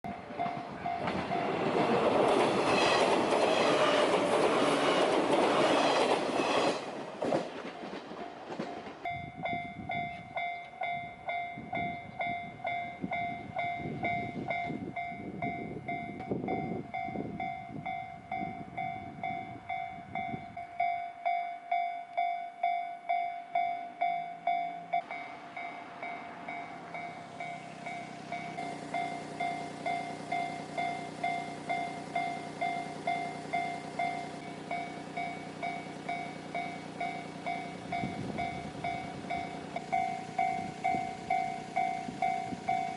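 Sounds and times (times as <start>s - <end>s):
crossing warning bell ringing: 0.1s - 7.0s, 8.2s - 42.9s
train passing: 0.1s - 42.9s.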